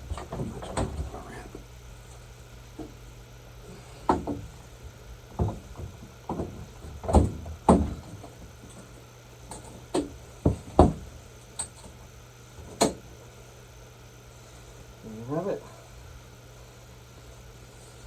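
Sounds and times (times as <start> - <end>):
steady low hum: 0.0 - 18.0
knocks and clunks: 5.3 - 8.4.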